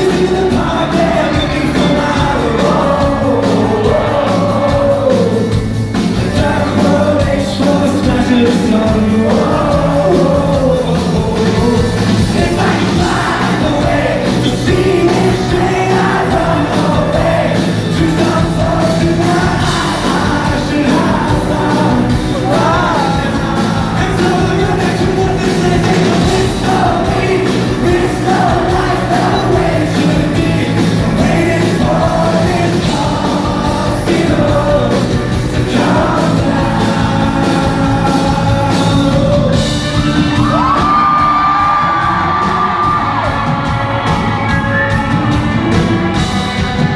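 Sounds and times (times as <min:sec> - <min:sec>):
audience yelling and whooping: 0:00.0 - 0:06.7, 0:09.2 - 0:46.9
man singing with band: 0:00.0 - 0:46.9.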